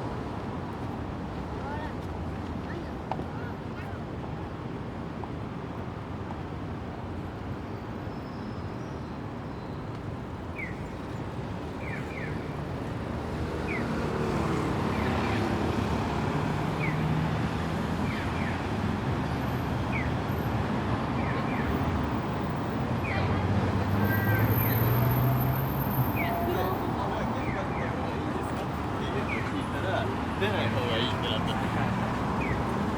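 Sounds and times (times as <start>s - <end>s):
passing cars humming: 12.9s - 32.9s.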